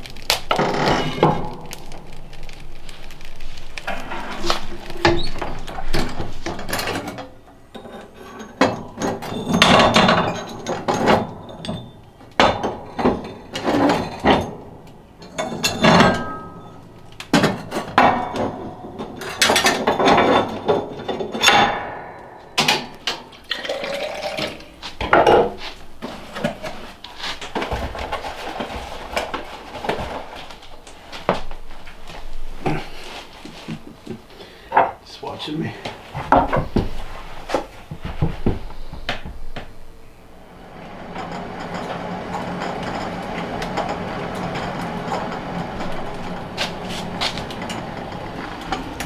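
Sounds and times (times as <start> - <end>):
pots pans and cutlery clattering: 0.1 - 35.0.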